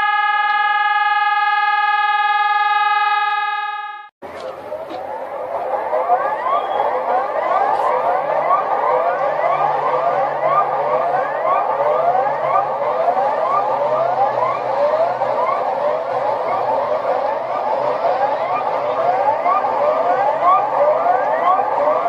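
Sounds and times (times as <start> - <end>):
warbling alert siren: 0.0 - 22.0.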